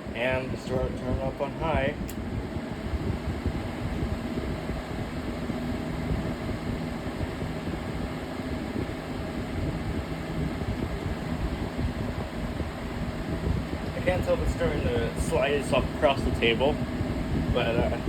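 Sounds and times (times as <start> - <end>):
box fan running: 0.0 - 18.0.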